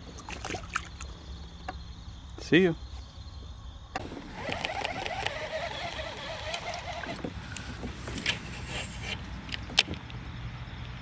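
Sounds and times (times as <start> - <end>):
water splashing around kayak: 0.0 - 1.1.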